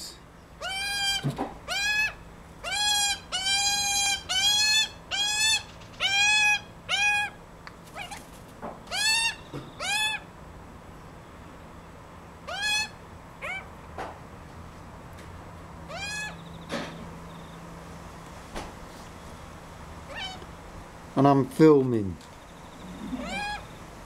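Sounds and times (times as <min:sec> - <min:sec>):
baby bird begging calls: 0:00.6 - 0:10.3, 0:12.4 - 0:13.7, 0:15.8 - 0:16.7, 0:20.0 - 0:20.6, 0:22.6 - 0:23.9.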